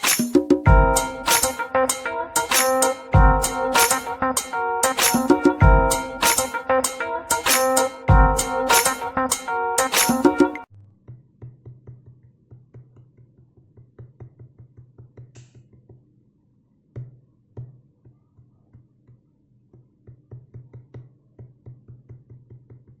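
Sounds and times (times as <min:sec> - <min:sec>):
electronic beat with low drum hits: 0:00.0 - 0:10.7
loud burst of music: 0:00.0 - 0:10.7.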